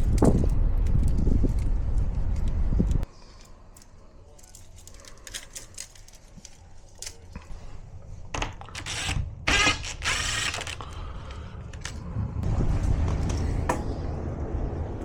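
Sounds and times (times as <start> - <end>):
low rumble: 10.0 - 15.0.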